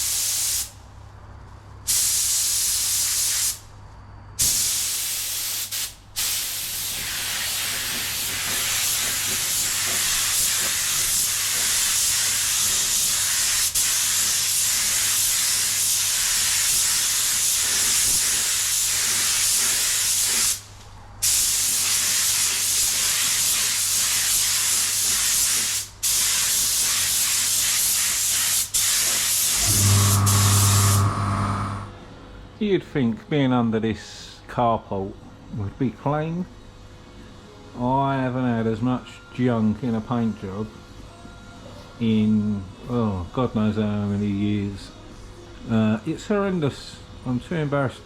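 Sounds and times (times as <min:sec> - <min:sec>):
spray gun hissing: 0:21.2 - 0:31.9
low hum: 0:29.6 - 0:32.2.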